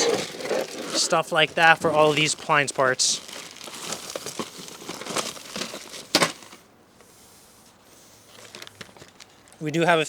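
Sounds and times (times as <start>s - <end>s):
rummaging through wires and parts: 0.0s - 6.6s, 8.3s - 9.7s.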